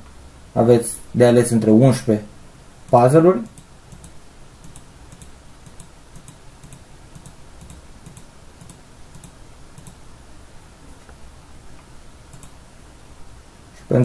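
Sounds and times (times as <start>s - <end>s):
computer mouse clicking: 2.9s - 10.0s, 12.3s - 12.6s.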